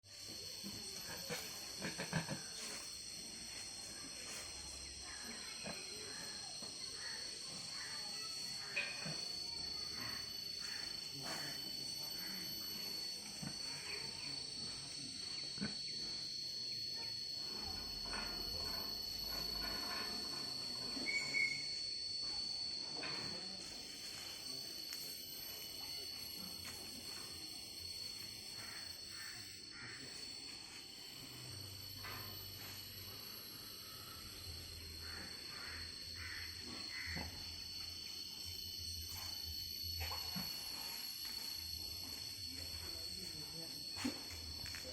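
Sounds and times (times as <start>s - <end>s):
high insect whine: 0.0s - 44.9s
pigs grunting: 1.0s - 2.9s.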